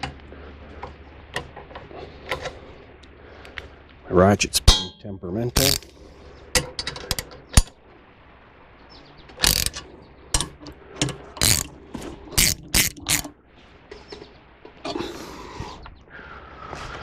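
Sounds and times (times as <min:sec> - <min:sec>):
ratchet wrench clicking: 0:05.6 - 0:05.9, 0:09.4 - 0:09.8, 0:11.4 - 0:11.7, 0:12.4 - 0:13.3.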